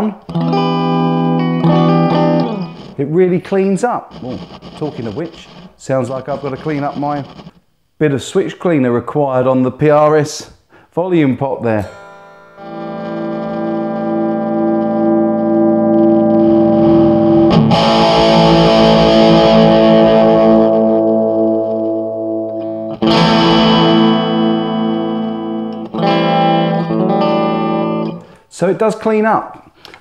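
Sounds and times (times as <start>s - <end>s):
electric guitar chords ringing: 0.0s - 3.3s, 4.1s - 7.6s, 11.8s - 28.4s.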